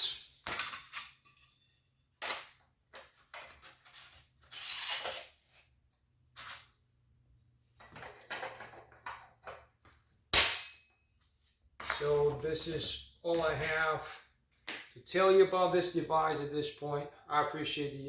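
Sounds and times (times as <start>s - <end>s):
metal scrape: 3.9s - 5.4s.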